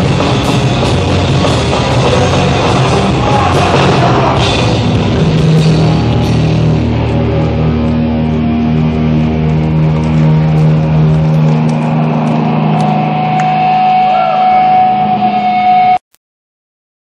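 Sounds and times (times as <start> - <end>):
distorted electric guitars: 0.0 - 16.0
high steady whine: 0.0 - 16.0.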